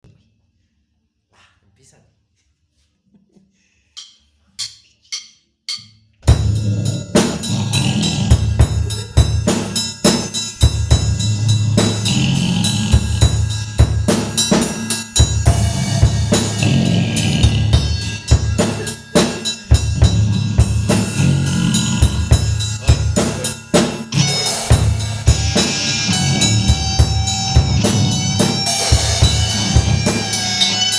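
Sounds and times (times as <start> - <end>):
drum kit fast beat: 4.6 - 30.9
metal band playing: 6.2 - 30.9.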